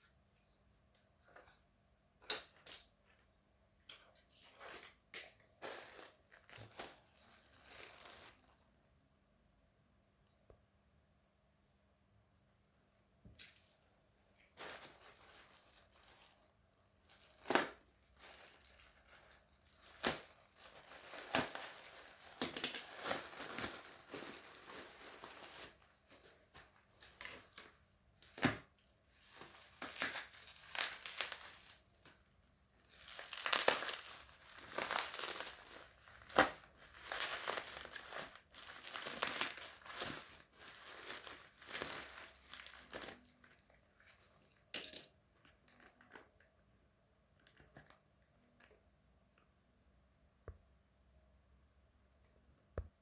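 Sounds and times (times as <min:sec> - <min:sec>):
plastic crinkling and rustling: 0:03.9 - 0:08.8, 0:13.4 - 0:46.4, 0:47.4 - 0:48.8.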